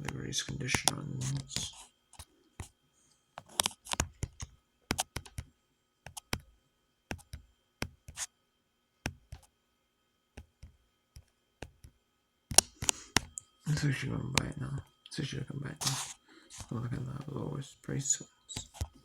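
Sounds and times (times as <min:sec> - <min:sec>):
computer mouse and keyboard clicking: 0:00.0 - 0:02.7, 0:03.4 - 0:05.5, 0:06.1 - 0:06.5, 0:07.1 - 0:08.3, 0:12.5 - 0:13.4, 0:15.8 - 0:17.3, 0:18.5 - 0:19.0.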